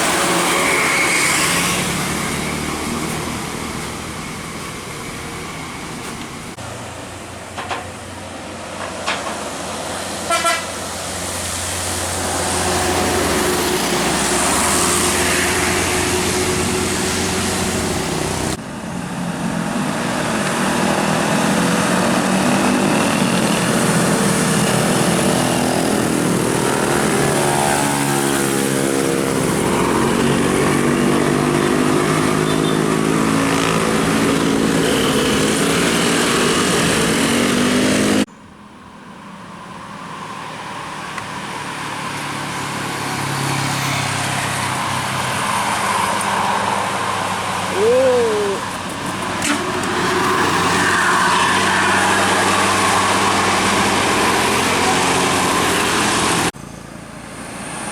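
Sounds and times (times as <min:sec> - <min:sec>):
vehicle noise: 0:00.0 - 0:57.9
musical bus horn playing tune: 0:10.3 - 0:10.8.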